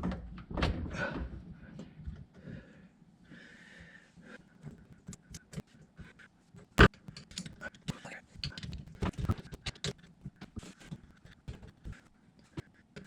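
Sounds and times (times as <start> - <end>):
person breathing: 0.9 - 6.2
hands clicking and rustling: 4.6 - 13.0.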